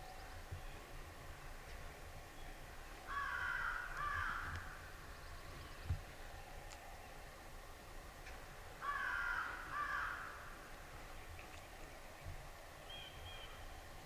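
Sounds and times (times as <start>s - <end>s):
crow cawing: 3.1s - 4.5s, 8.8s - 10.4s.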